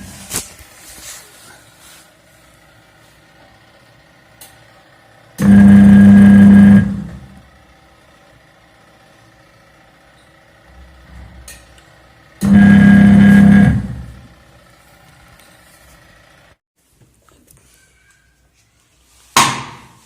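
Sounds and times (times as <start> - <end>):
electric motor humming: 5.3 - 7.7, 12.4 - 14.4.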